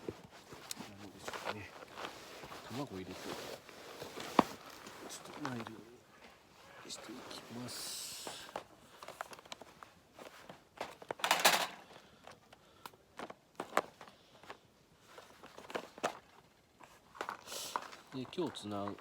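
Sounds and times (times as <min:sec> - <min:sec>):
cooking gear clicks and knocks: 0:10.8 - 0:14.6, 0:17.1 - 0:19.0.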